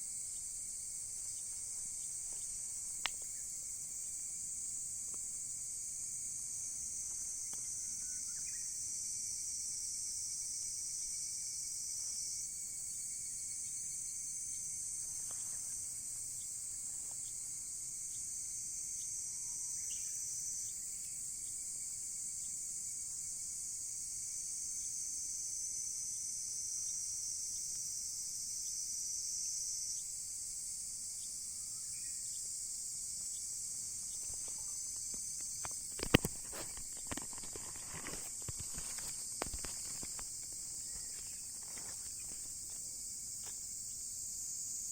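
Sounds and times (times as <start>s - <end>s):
crickets chirring: 0.0s - 44.9s
faint ticks: 1.2s - 3.8s, 7.0s - 7.8s, 34.0s - 43.8s.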